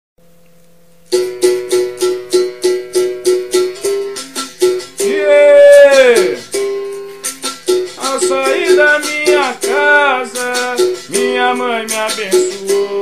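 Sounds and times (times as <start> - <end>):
berimbau struck rhythmically: 1.1 - 13.0
person singing long note: 5.0 - 6.5.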